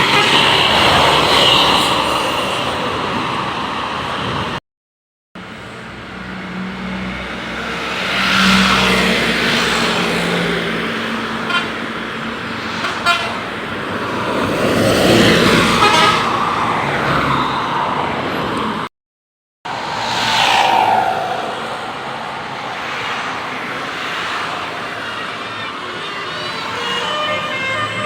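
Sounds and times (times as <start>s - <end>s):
musical air horn: 0.0s - 0.9s, 11.4s - 11.8s, 12.8s - 13.5s, 15.7s - 16.3s, 26.0s - 28.0s
bus engine: 0.0s - 4.6s, 5.4s - 18.9s, 19.7s - 28.0s
tyres on road: 0.0s - 4.6s, 5.4s - 18.9s, 19.7s - 28.0s.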